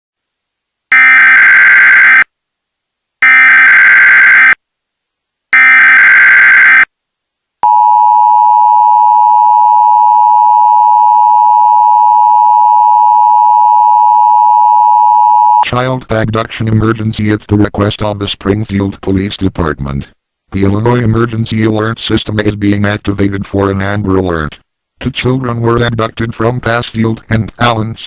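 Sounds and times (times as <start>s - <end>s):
loud steady attention tone: 0.9s - 2.3s, 3.2s - 4.6s, 5.5s - 6.9s, 7.6s - 15.6s.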